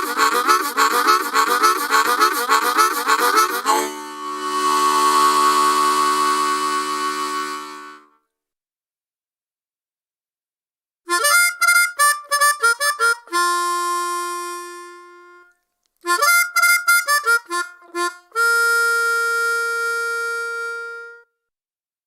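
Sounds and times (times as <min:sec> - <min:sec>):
harmonica riffs: 0:00.0 - 0:08.2, 0:11.1 - 0:21.2.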